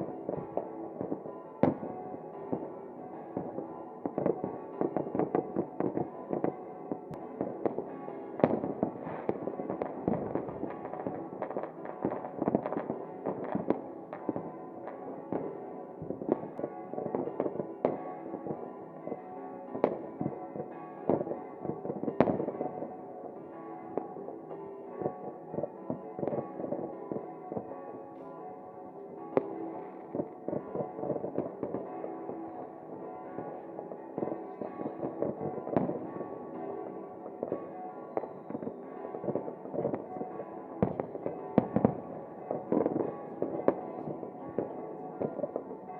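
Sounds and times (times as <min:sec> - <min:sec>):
music with sustained tones: 0:00.0 - 0:45.9
fireworks bangs and crackle: 0:00.1 - 0:02.7, 0:03.4 - 0:18.7, 0:19.8 - 0:23.0, 0:34.2 - 0:36.7, 0:37.3 - 0:45.9.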